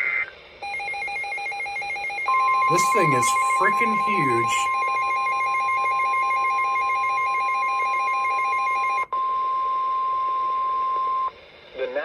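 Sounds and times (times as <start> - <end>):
steady high alarm tone: 2.3 - 4.9.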